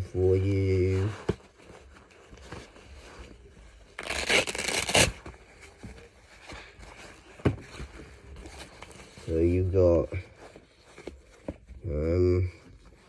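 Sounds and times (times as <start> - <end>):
fabric rustling and rubbing: 0.0 - 13.0
hook and loop ripping: 4.0 - 5.2.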